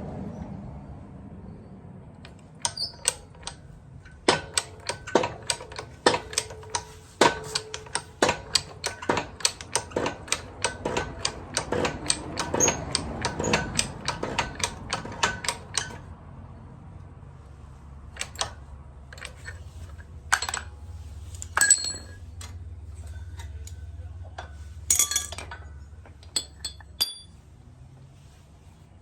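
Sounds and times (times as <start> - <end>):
hand tools clicking on metal: 2.2 - 16.1, 18.2 - 20.7, 21.3 - 23.8, 24.4 - 27.3.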